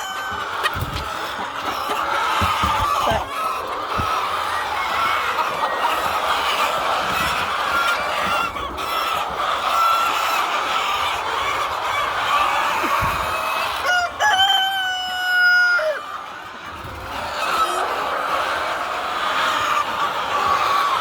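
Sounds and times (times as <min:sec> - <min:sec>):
rooster crowing: 0:00.0 - 0:00.7, 0:13.8 - 0:16.1
hens clucking: 0:00.0 - 0:21.0.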